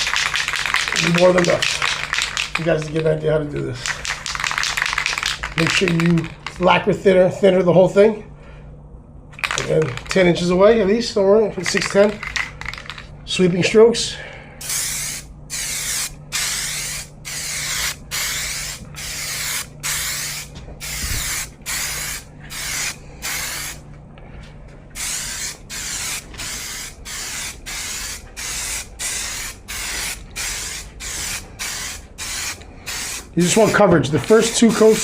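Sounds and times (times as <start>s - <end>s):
aerosol spray can hissing: 0.0s - 2.9s, 3.8s - 6.6s, 14.6s - 23.8s, 25.0s - 35.0s.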